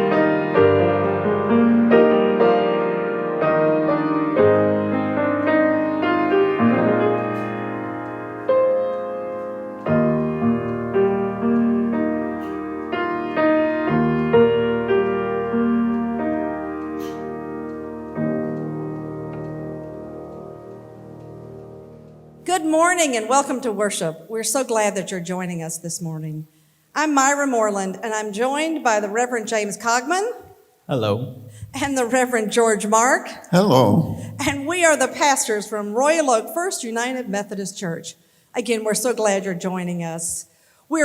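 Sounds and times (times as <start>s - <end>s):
solo piano chords: 0.0s - 22.4s.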